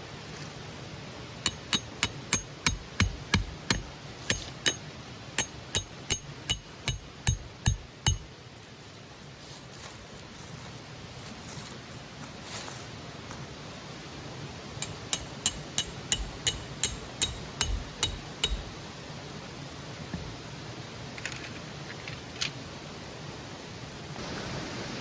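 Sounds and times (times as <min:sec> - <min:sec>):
sharp ringing metal taps: 0:01.5 - 0:04.8, 0:05.4 - 0:08.3, 0:14.8 - 0:18.8
stream hissing: 0:22.9 - 0:25.0.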